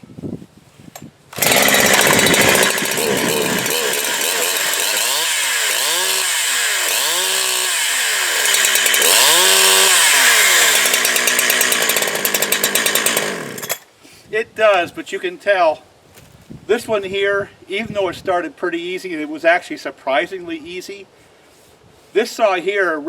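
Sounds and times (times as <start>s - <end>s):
chainsaw starting and revving: 1.3s - 13.9s.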